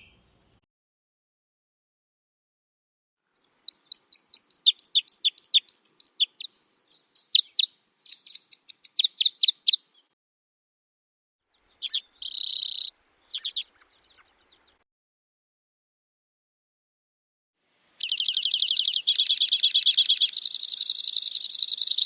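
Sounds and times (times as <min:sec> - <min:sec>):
bird chirping: 0:00.0 - 0:00.5, 0:03.3 - 0:10.2, 0:11.5 - 0:14.8, 0:18.0 - 0:22.0.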